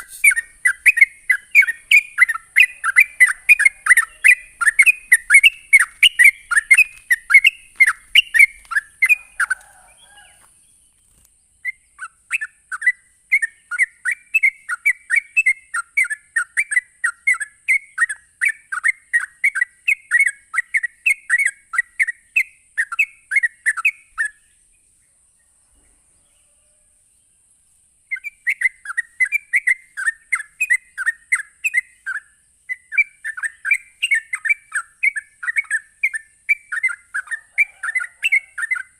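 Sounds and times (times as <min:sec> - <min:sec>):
faint high hiss: 0:00.0 - 0:11.9
bird chattering song: 0:00.0 - 0:24.8, 0:28.1 - 0:38.9.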